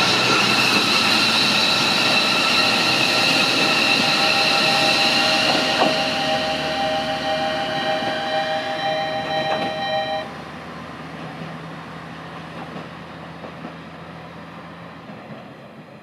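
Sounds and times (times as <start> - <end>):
railcar rumble with low hum: 0.0 - 16.0
high-pitched chord of tones: 2.4 - 10.3.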